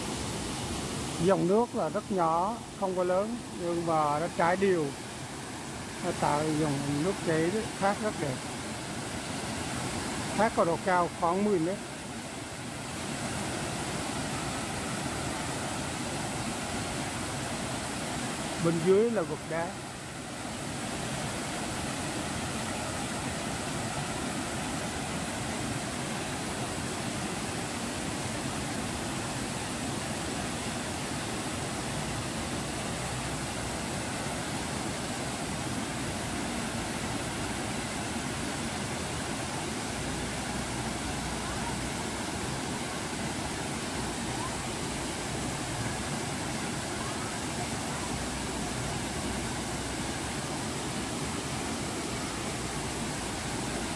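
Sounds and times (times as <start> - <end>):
waterfall rushing hiss: 0.0 - 53.9.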